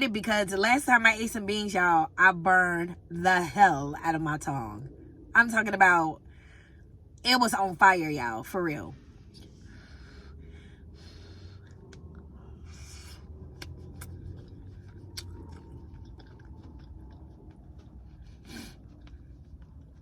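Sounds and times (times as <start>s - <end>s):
steady low rumble: 0.0s - 20.0s
person chewing: 11.0s - 20.0s.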